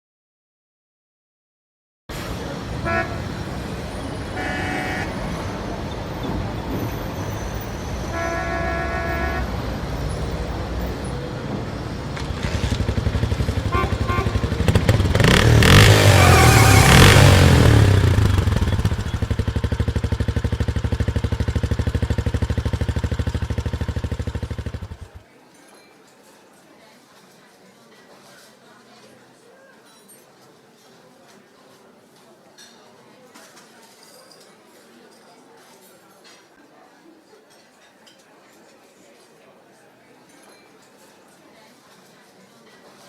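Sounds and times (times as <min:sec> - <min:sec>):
vehicle horn toots: 0:02.2 - 0:10.5, 0:11.8 - 0:19.5
small engine running close by: 0:11.8 - 0:25.2.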